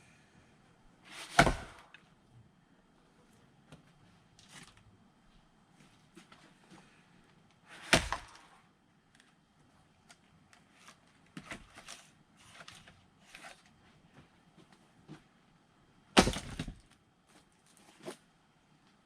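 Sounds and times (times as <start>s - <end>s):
axe striking a log: 1.3s - 1.8s, 7.8s - 8.4s, 16.2s - 16.8s
split firewood knocking and clattering: 16.2s - 16.9s.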